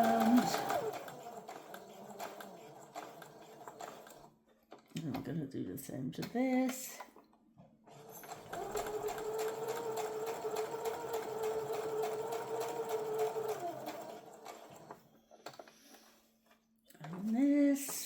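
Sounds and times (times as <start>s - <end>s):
sewing machine stitching: 0.0s - 4.3s, 7.9s - 15.7s.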